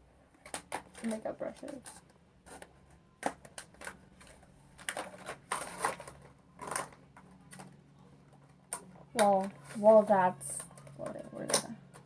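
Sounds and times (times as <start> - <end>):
packaging crinkling and rustling: 0.4 - 8.6.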